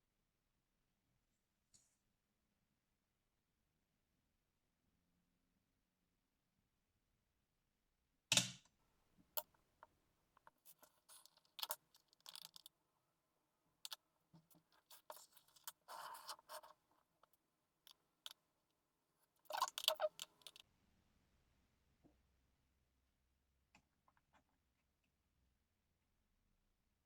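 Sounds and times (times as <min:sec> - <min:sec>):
tools clicking and scraping on laptop: 0:10.4 - 0:12.7, 0:13.9 - 0:18.4, 0:19.3 - 0:20.6.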